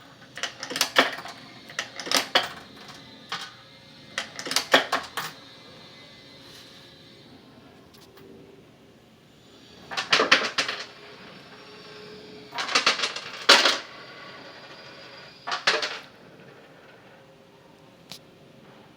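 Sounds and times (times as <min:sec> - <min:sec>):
coins clattering and clinking: 0:00.0 - 0:05.6, 0:09.8 - 0:11.6, 0:12.5 - 0:17.2.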